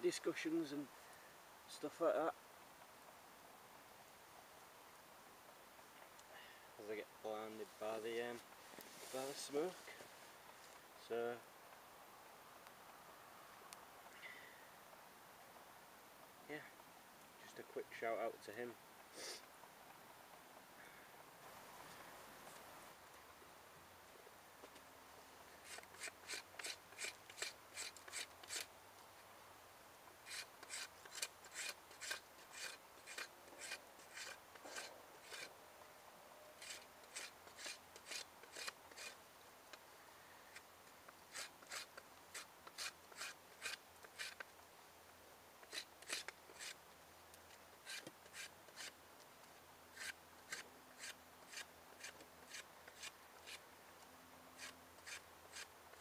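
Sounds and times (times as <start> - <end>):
short scraping strokes: 30.2 - 35.5.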